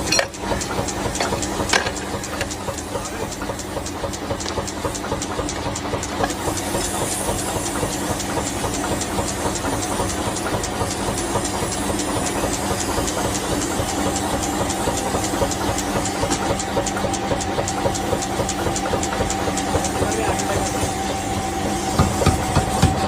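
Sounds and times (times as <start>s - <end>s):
machine humming: 0.0s - 10.2s.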